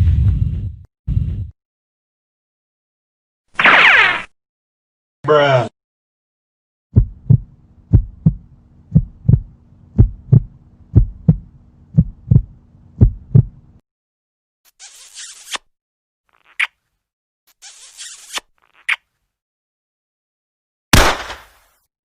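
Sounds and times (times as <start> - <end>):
heartbeat thuds: 6.9 - 13.7
steady low hum: 7.0 - 13.8.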